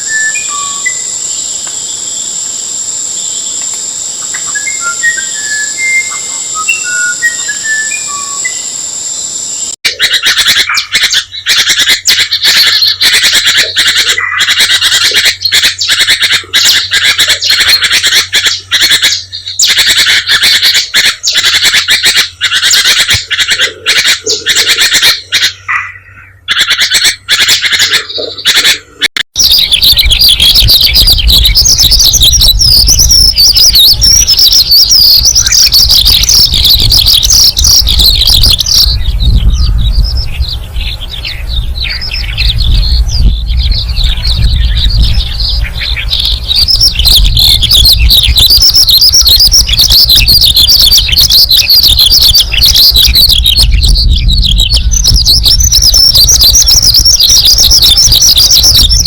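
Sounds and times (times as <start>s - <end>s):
birds twittering: 0.0s - 59.0s
birds squawking: 9.9s - 59.0s
low rumble: 29.7s - 48.6s, 52.0s - 56.7s.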